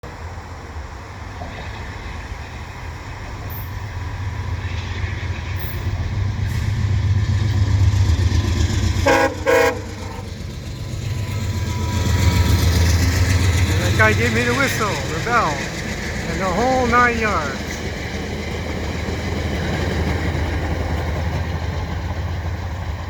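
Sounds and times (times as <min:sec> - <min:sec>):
diesel locomotive rumble: 0:00.0 - 0:23.0
locomotive horn blasts: 0:09.0 - 0:15.7.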